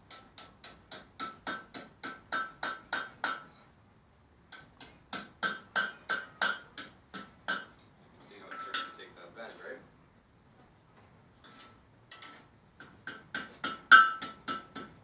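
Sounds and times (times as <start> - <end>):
hammer striking iron on anvil: 0.1 - 3.6, 4.5 - 7.7, 8.5 - 9.0, 12.8 - 15.0.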